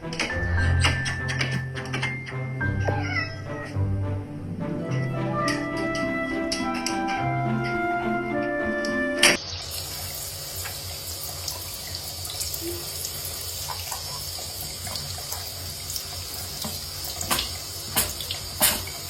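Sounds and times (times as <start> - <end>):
running water: 9.3 - 19.0.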